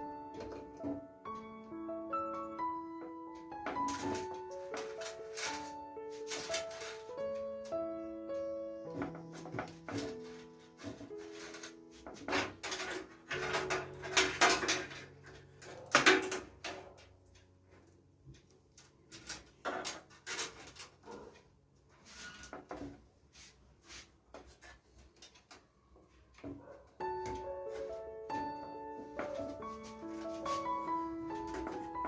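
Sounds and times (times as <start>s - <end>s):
hard objects clicking and scraping: 3.6s - 7.8s, 8.9s - 17.1s, 18.8s - 21.4s.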